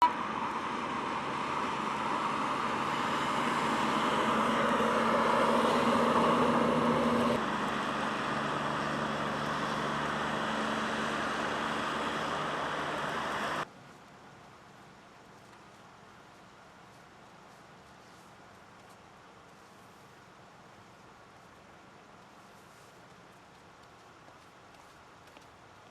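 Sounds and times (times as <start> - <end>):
road noise: 0.0 - 25.9
truck engine and tyre noise: 0.0 - 25.9
faint hiss: 11.2 - 25.9.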